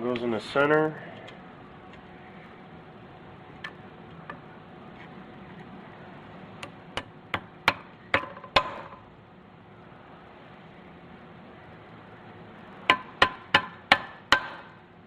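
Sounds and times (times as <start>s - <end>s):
hammer tapping metal: 7.0s - 9.0s, 12.9s - 14.8s.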